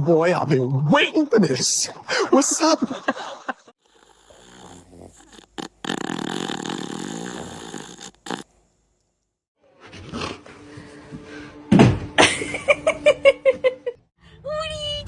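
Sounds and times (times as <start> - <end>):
dog snoring rasp: 3.8 - 8.5.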